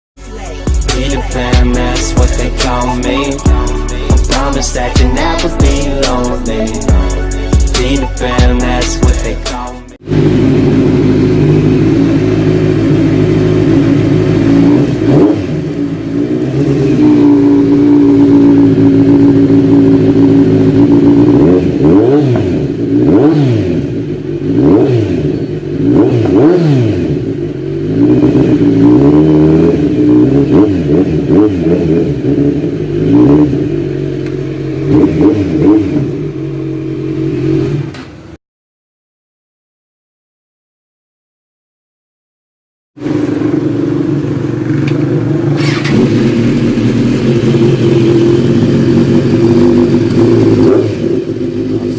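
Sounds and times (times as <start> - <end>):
motorcycle engine idling and revving: 0.2 - 38.4, 43.0 - 51.9.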